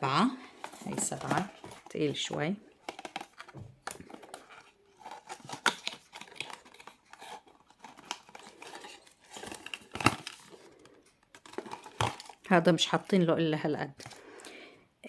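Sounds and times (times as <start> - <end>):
cardboard and paper rustling tearing: 2.8 - 10.8.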